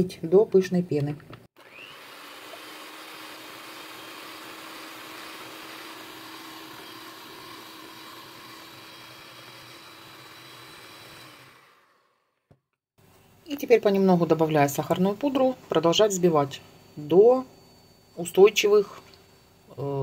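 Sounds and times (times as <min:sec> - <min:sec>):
electric mixer whipping: 0:01.6 - 0:12.5.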